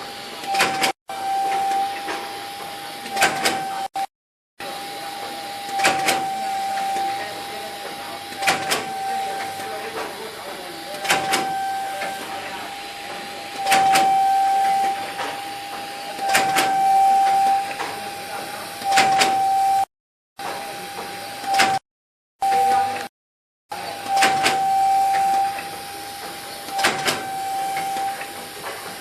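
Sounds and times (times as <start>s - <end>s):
high machine whine: 0.0s - 21.8s, 23.7s - 29.0s
machine clacking: 5.6s - 7.2s, 7.9s - 10.2s, 10.9s - 12.3s, 13.0s - 18.0s, 23.9s - 29.0s.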